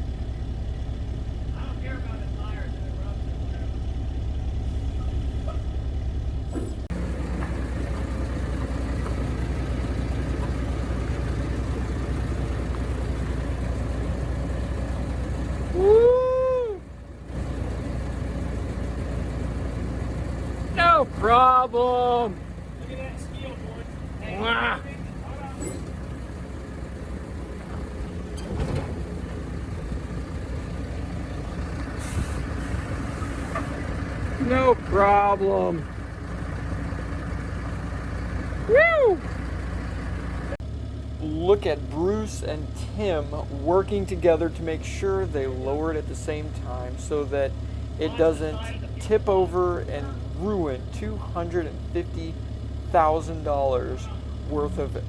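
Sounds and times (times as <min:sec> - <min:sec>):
large engine idling: 0:00.0 - 0:55.0.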